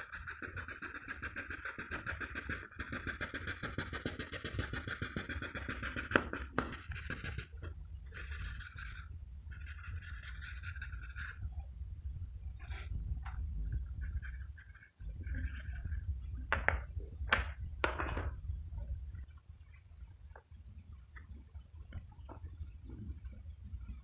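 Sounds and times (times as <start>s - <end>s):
pencil scratching on paper: 0.0s - 11.7s, 13.8s - 16.0s
low steady hum: 0.0s - 24.0s.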